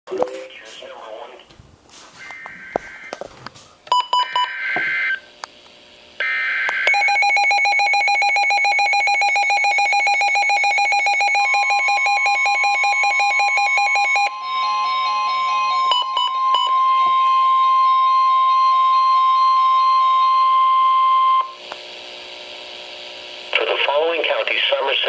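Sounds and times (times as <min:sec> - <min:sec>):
fluttering alarm tone: 0:06.3 - 0:21.6.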